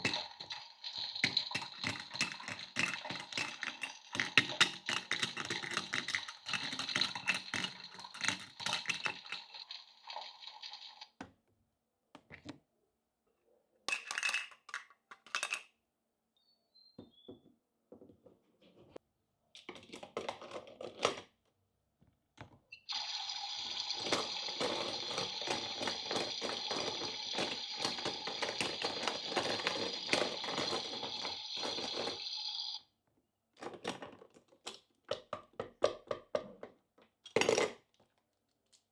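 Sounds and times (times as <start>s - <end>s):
plastic toy pieces clicking: 1.2s - 9.5s, 24.0s - 32.2s.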